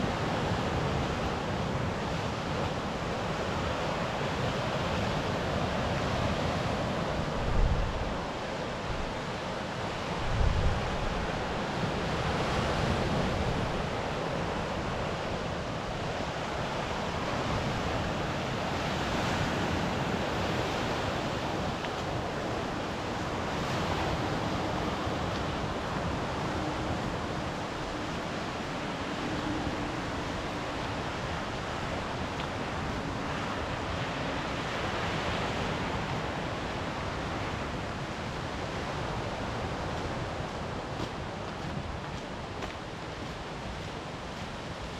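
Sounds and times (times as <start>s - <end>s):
sea surf washing on shore: 0.0s - 44.9s
wind buffeting microphone: 12.8s - 34.2s.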